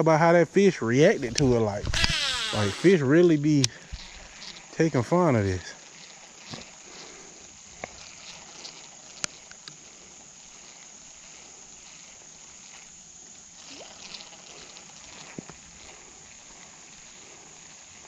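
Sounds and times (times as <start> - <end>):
insects chirring: 0.0 - 18.0
sharp clicks: 1.2 - 3.0
faint ticks: 1.2 - 4.9, 5.6 - 17.8.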